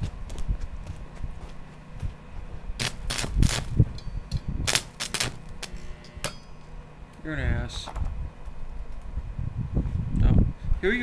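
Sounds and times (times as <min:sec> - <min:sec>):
welder low hum: 0:00.0 - 0:11.0
welding arc crackling and popping: 0:02.8 - 0:06.4.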